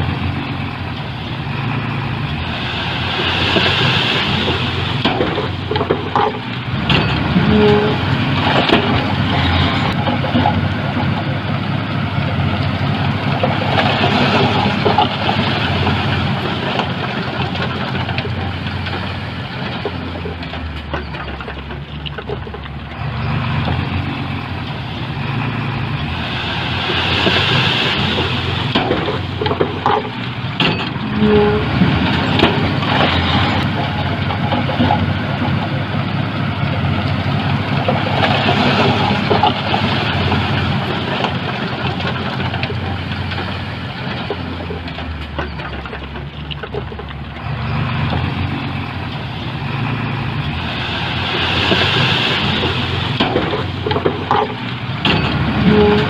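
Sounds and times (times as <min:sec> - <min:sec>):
diesel engine drone: 0:00.0 - 0:56.0
metal clanks and rattles: 0:04.4 - 0:11.4, 0:27.2 - 0:36.9, 0:51.6 - 0:56.0.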